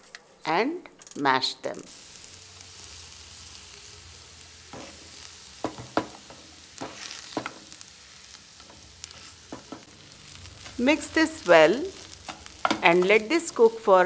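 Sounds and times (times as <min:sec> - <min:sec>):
faint sizzle: 0:01.3 - 0:14.0
potatoes being mashed and stirred: 0:04.7 - 0:14.0.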